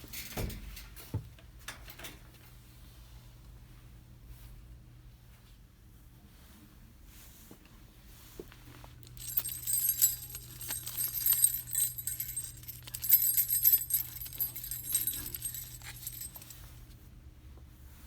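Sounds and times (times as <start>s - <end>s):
small items jingling and clinking: 9.0s - 16.6s.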